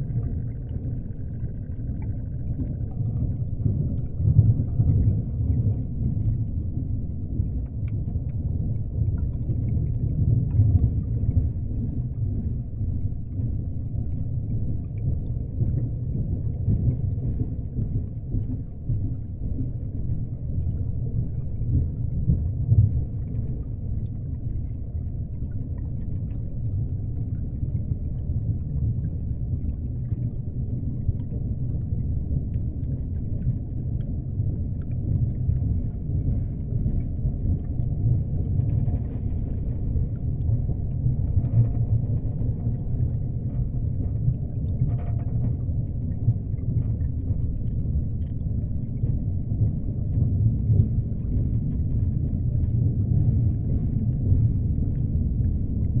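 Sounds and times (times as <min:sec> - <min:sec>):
deep underwater rumble: 0:00.0 - 0:56.0.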